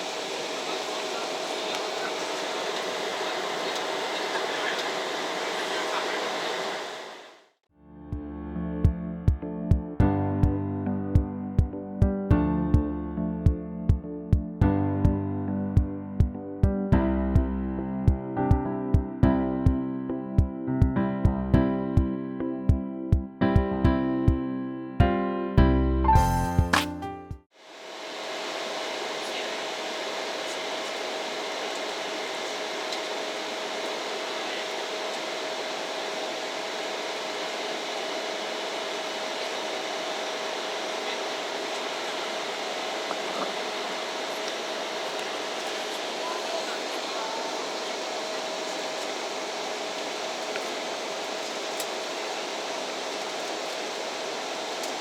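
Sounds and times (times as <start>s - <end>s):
airliner cabin rush: 0.0s - 7.3s
jet engines and airflow roar: 0.0s - 7.4s, 27.7s - 55.0s.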